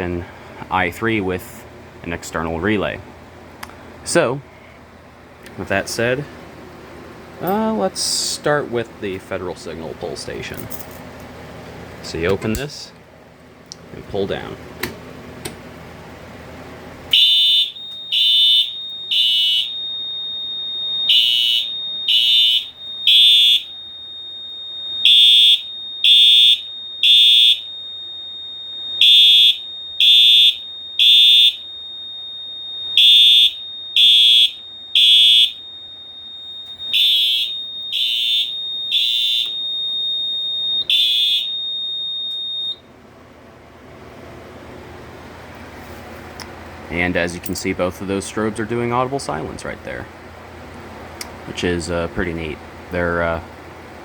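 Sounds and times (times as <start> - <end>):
fire alarm horn blasts: 17.1 - 43.0.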